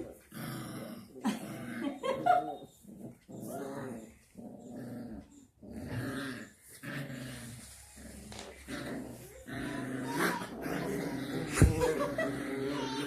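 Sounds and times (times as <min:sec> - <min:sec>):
puppies growling: 0:00.0 - 0:13.0.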